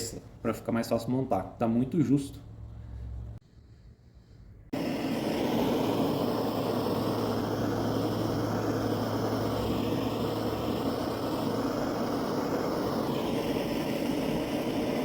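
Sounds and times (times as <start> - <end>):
heating tool rushing blast: 4.8 - 15.0.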